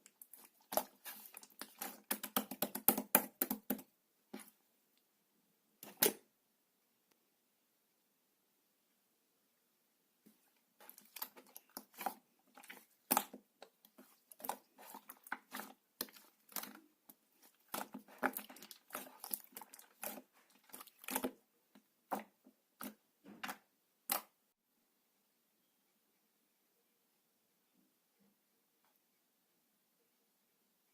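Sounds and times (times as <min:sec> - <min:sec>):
slime squishing with sticky pops: 0:00.0 - 0:03.8, 0:10.8 - 0:21.4.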